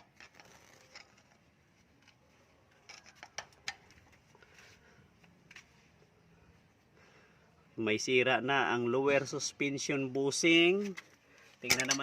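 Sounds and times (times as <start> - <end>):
faint metallic clicks and clunks: 10.8 - 12.0.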